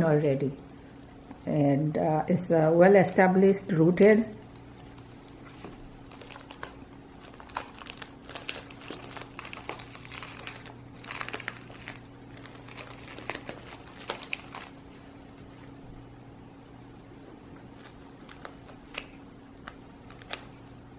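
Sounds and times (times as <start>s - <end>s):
steady low hum: 0.0s - 20.9s
packaging crinkling and rustling: 4.5s - 15.0s, 17.6s - 20.8s.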